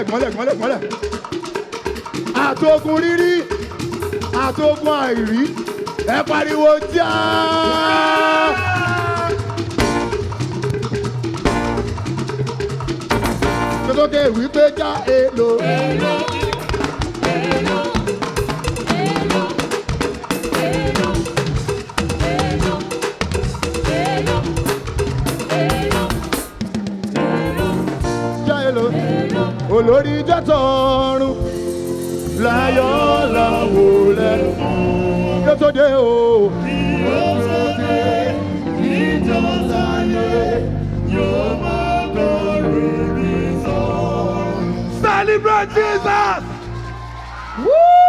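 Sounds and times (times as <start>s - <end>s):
live band playing: 0.0s - 47.6s
drum kit beat: 1.0s - 35.6s
steady bass line: 9.8s - 10.5s, 11.4s - 12.3s, 13.0s - 14.5s.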